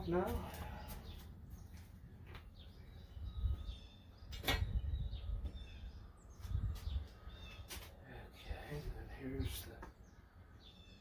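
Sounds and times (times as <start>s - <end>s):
faint bird chirps: 2.5s - 11.0s
wind rumbling on microphone: 2.6s - 9.8s.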